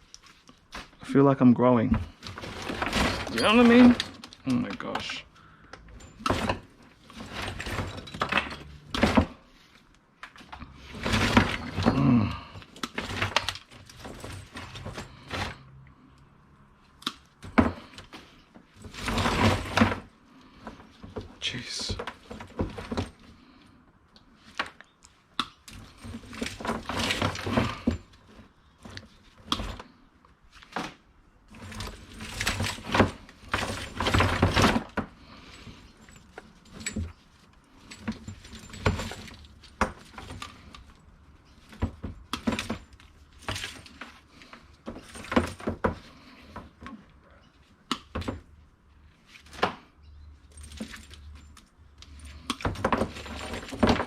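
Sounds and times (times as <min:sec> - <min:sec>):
rustling and knocks: 0:00.0 - 0:01.1, 0:01.8 - 0:15.8, 0:16.8 - 0:54.0
small hard items clinking: 0:02.0 - 0:15.8, 0:31.5 - 0:48.5, 0:49.3 - 0:54.0.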